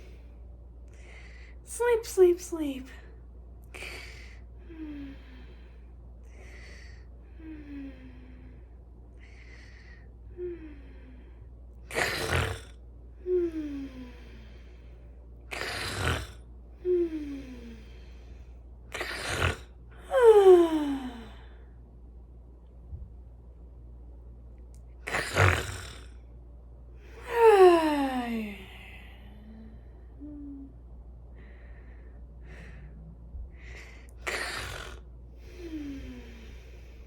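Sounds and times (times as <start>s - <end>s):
woman snoring: 3.7s - 5.8s, 6.4s - 21.6s, 25.0s - 26.2s, 27.1s - 30.8s, 33.6s - 37.0s
breathy inhales: 31.3s - 37.0s.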